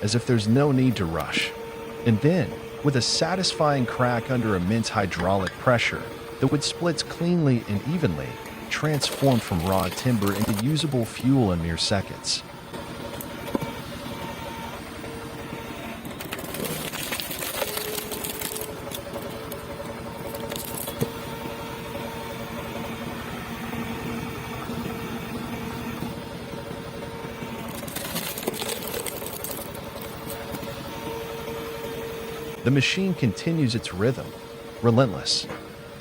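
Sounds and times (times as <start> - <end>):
log splitter motor and pump hum: 0.0 - 36.0
rough grinding noise: 0.5 - 12.4, 16.0 - 19.6.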